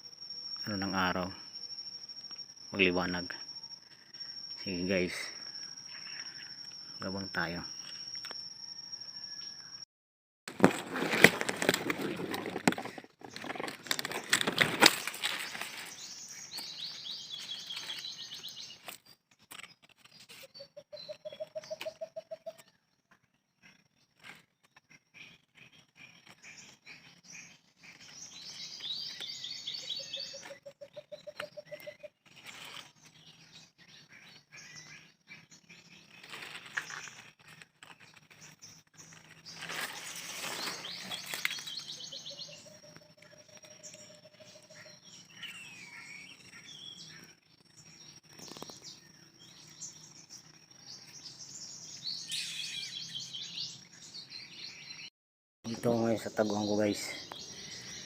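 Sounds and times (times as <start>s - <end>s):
high chattering birdsong: 0.0s - 9.8s, 11.5s - 55.1s, 55.7s - 58.0s
low rapid bird trill: 0.0s - 9.9s, 11.0s - 55.1s, 55.7s - 58.0s.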